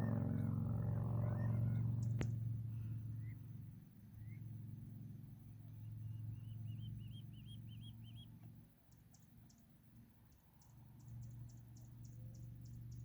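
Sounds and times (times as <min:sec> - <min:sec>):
bird calling: 0:00.0 - 0:03.5, 0:04.1 - 0:04.6, 0:05.8 - 0:09.6
low steady hum: 0:00.0 - 0:13.0.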